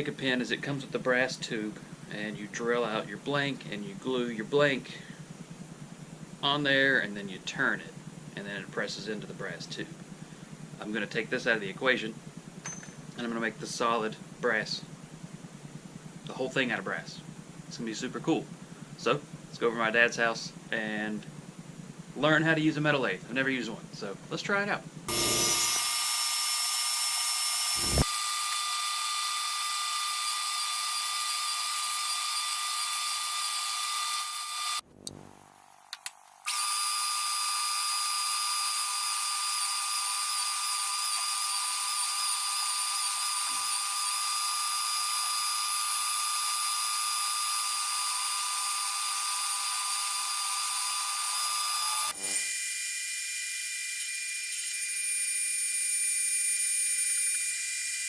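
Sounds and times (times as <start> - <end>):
metal lathe whining: 25.1 - 58.0.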